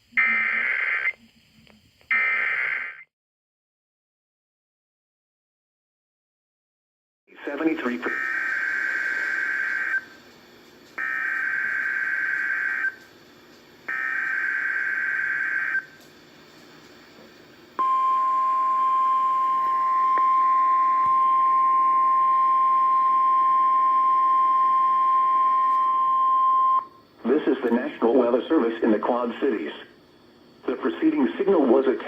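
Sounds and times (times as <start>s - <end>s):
steady warning alarm tone: 0.2s - 1.2s, 2.1s - 3.0s, 7.8s - 10.2s, 11.0s - 13.1s, 13.9s - 16.0s, 17.8s - 27.0s.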